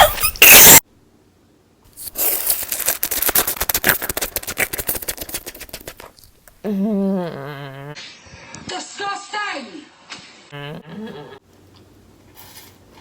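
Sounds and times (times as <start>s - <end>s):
noodles being slurped: 2.0s - 6.2s.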